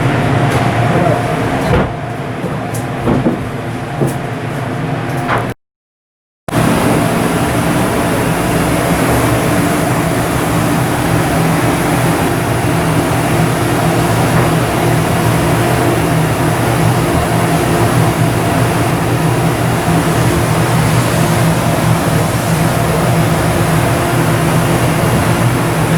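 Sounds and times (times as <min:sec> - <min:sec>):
ship diesel engine droning: 0:06.5 - 0:25.9.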